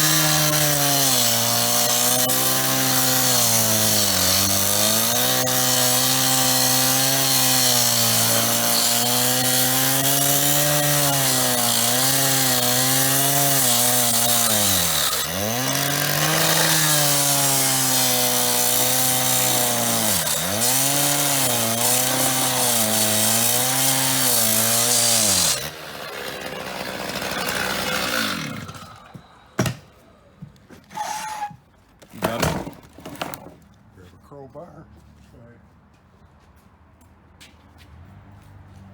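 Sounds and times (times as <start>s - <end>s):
power saw cutting metal: 0.0s - 31.6s.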